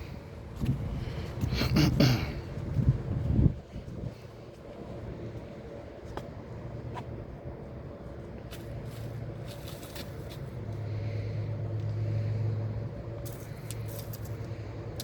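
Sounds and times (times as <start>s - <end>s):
light clicks and scrapes: 8.5s - 10.8s, 13.2s - 15.0s.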